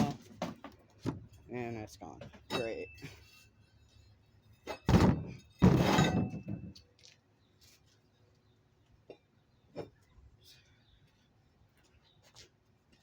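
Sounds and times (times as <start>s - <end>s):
metallic ring: 2.5s - 6.6s
heavy thuds of tire dropping: 4.8s - 6.8s.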